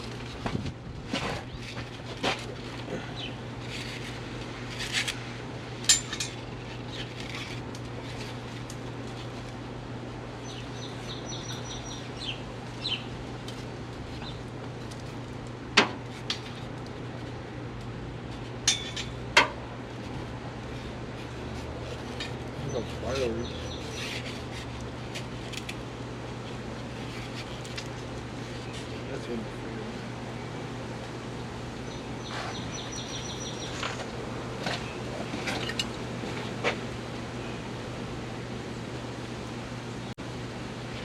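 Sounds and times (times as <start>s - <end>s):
steady low hum: 0.0s - 41.0s
hand tools clinking on metal: 5.8s - 6.4s, 18.6s - 19.5s.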